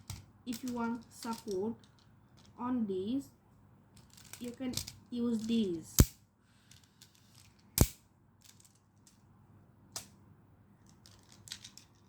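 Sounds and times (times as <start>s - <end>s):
plastic magnetic tiles clicking together: 0.0s - 2.5s.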